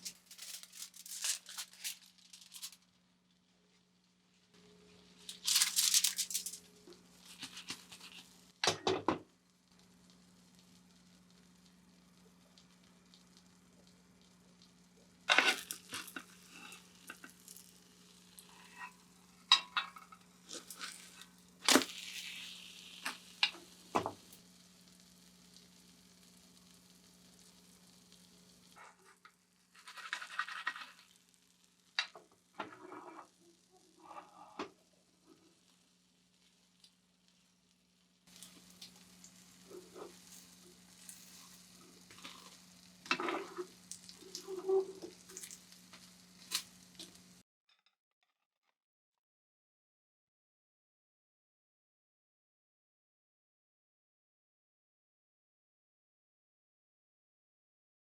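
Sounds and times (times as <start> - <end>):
light sizzling: 0.0 - 8.7, 9.3 - 47.4.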